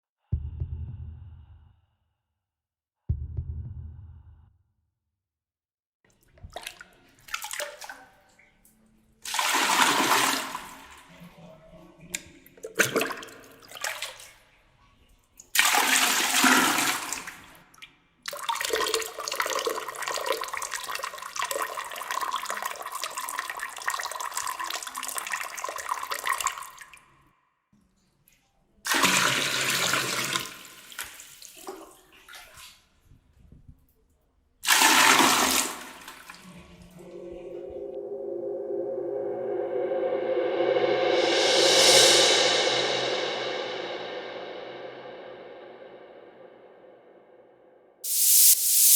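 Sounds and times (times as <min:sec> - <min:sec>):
rushing whooshing noise bursts: 0:37.1 - 0:46.4.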